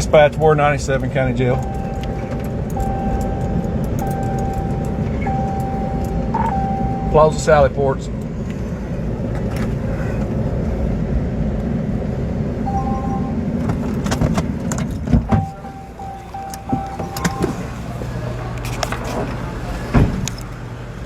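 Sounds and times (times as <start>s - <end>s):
car rumbling at low speed: 0.0s - 21.0s
thin electronic tone: 1.6s - 7.6s, 12.7s - 13.4s, 15.3s - 17.7s.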